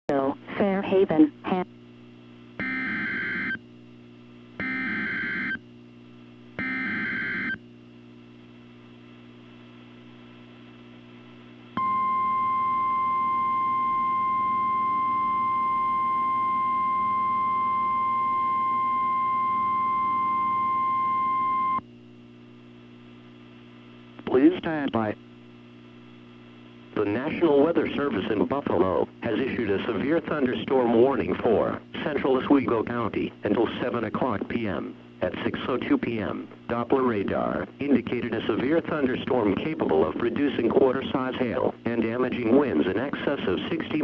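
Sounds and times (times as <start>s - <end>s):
steady warning alarm tone: 2.6s - 3.6s, 4.6s - 5.6s, 6.6s - 7.6s, 11.8s - 21.8s
low hum: 3.5s - 24.2s.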